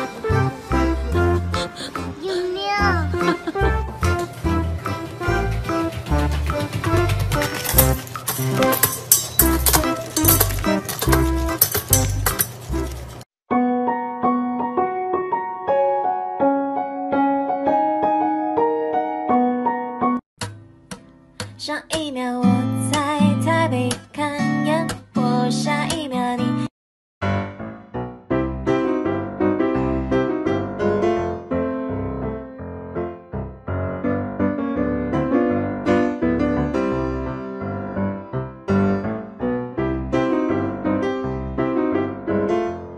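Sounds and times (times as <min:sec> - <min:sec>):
gentle piano melody: 0:00.0 - 0:20.2, 0:27.2 - 0:42.9.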